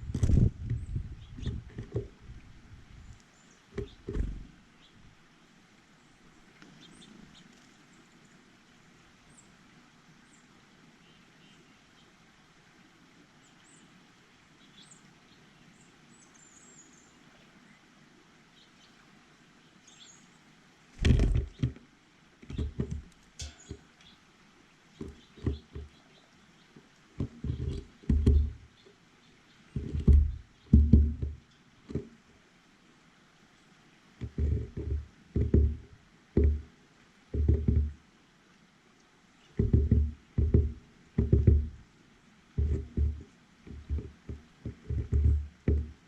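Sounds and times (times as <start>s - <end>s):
small birds chirping: 0.0s - 5.1s, 5.9s - 12.2s, 13.4s - 21.8s, 22.4s - 31.7s, 39.3s - 41.8s
loud knocks and thumps: 3.8s - 4.6s, 21.0s - 21.8s, 22.5s - 23.8s, 27.2s - 28.6s, 29.8s - 32.1s, 34.2s - 36.7s, 37.3s - 38.0s, 39.6s - 41.8s, 42.6s - 46.0s.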